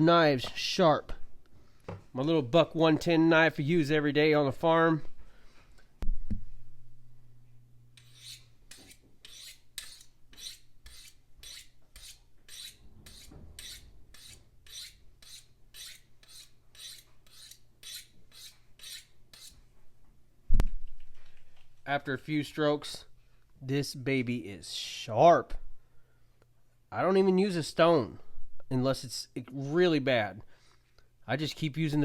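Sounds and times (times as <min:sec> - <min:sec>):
knife scraping on sharpening steel: 0:08.0 - 0:19.6.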